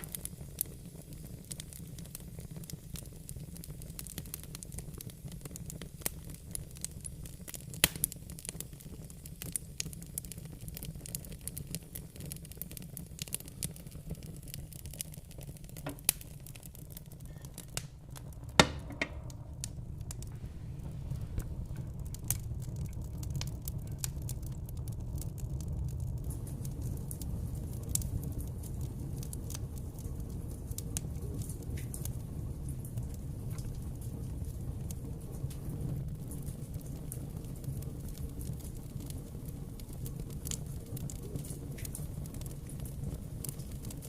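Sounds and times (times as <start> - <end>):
sharp fire pops: 0.0 - 44.0
wood fire crackling: 0.0 - 44.0
low steady rumble: 15.2 - 36.5.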